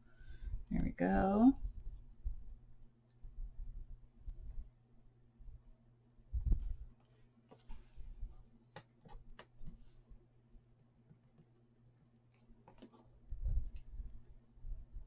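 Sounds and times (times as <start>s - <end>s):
paper and tools clicking and tapping: 7.0s - 8.0s, 8.7s - 9.9s, 10.9s - 13.1s.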